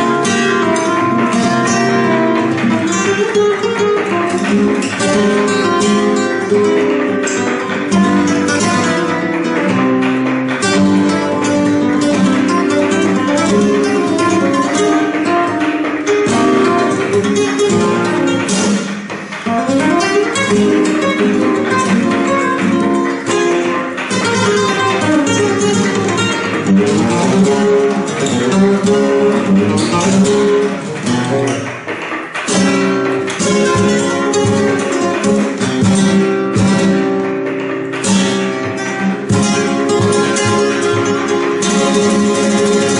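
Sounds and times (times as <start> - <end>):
flamenco guitar playing: 0.0 - 42.9.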